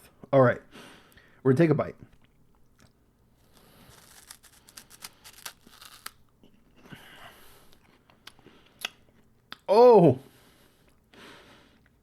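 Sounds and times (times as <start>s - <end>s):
crunchy snack chewing: 2.8s - 6.2s.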